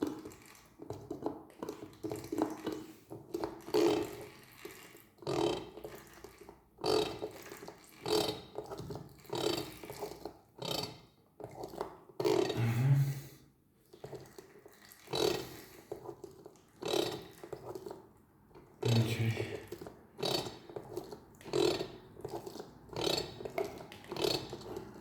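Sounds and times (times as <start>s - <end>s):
oil pump strokes: 0.0s - 13.2s, 13.8s - 25.0s
oil gurgling: 11.4s - 25.0s.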